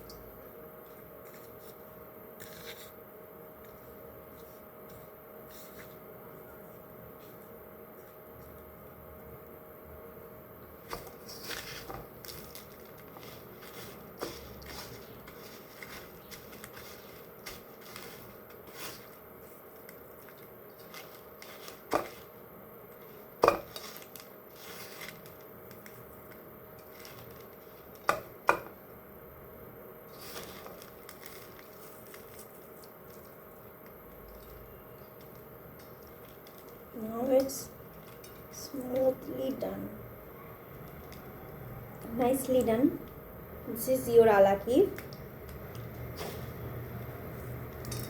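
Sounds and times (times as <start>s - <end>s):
utensils and dishes clinking: 47.8s - 48.0s.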